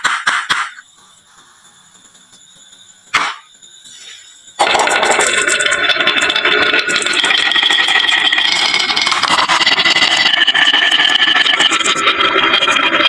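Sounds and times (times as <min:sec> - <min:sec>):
marbles rattling down wooden run: 0:04.6 - 0:12.8.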